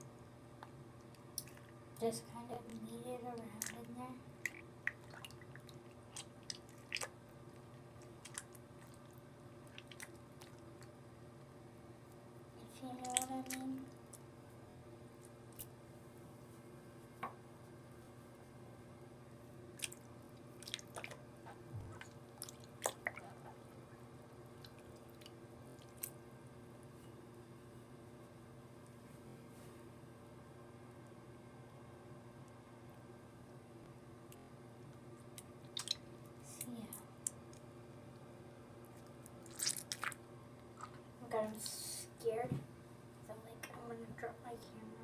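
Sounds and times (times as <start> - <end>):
wet slime squishing: 3.4 - 11.0, 12.8 - 14.3, 19.7 - 23.7, 24.6 - 26.2, 35.3 - 36.6, 38.9 - 41.9
small water splashes: 4.4 - 7.2, 20.6 - 21.2, 21.9 - 23.4, 35.7 - 36.1, 39.4 - 40.2.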